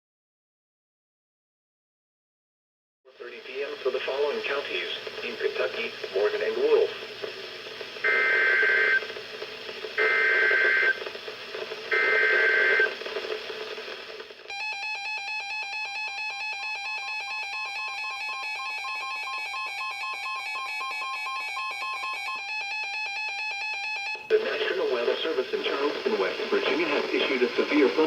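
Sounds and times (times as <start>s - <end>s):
rapid electronic alarm beeping: 8.0s - 9.1s, 10.0s - 11.0s, 11.9s - 13.0s, 14.5s - 24.2s.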